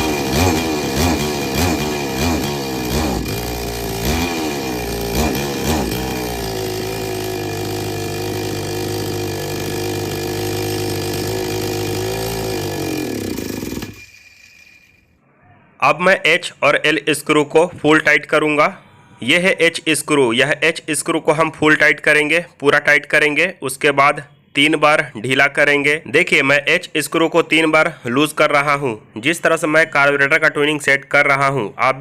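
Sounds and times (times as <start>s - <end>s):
chainsaw engine revving: 0.0s - 14.1s.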